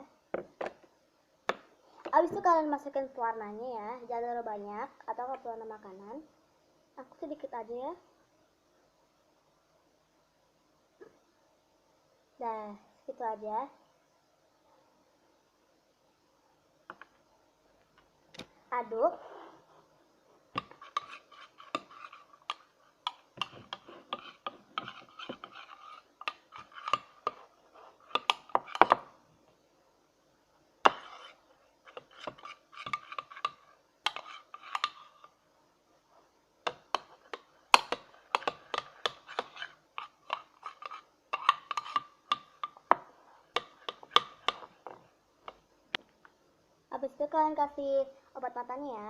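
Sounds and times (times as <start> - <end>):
utensil stirring mix in bowl: 19.3 - 29.2, 30.8 - 45.7.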